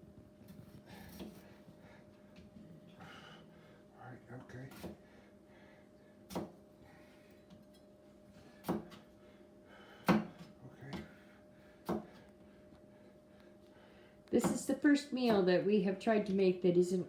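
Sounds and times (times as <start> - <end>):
knife chopping on cutting board: 6.3 - 6.6, 8.6 - 9.0, 10.0 - 11.1, 11.8 - 12.2.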